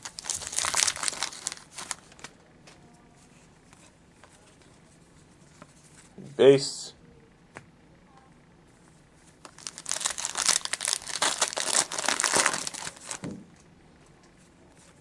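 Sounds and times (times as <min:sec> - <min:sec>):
wrapper tearing and crinkling: 0:00.0 - 0:02.3, 0:09.4 - 0:13.3.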